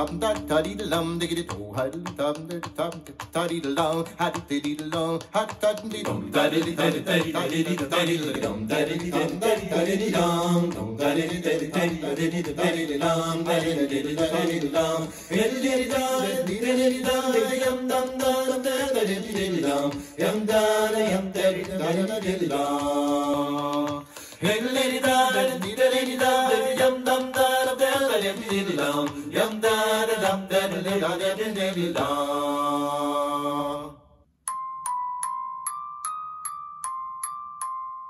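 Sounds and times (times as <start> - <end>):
chant-like singing through speaker: 3.4 - 34.0
bell-like mallet notes: 34.5 - 38.0.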